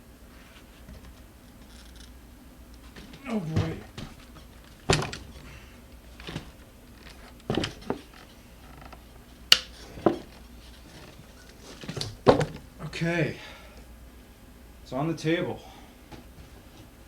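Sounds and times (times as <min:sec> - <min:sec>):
scooter knocking on table: 0:12.3 - 0:12.6.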